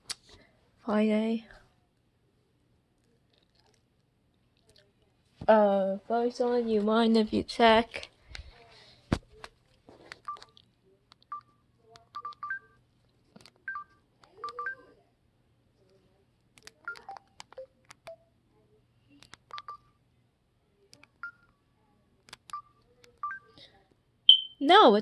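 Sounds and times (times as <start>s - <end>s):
phone keypad beeps: 12.2s - 12.8s, 13.7s - 14.8s, 16.8s - 18.2s, 19.5s - 19.9s, 21.2s - 21.5s, 22.5s - 23.6s, 24.3s - 24.6s.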